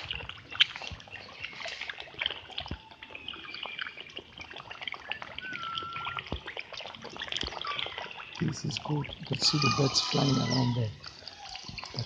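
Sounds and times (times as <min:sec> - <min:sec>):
pond water trickling and splashing: 0:00.0 - 0:12.0
whistled bird calls: 0:05.1 - 0:06.3.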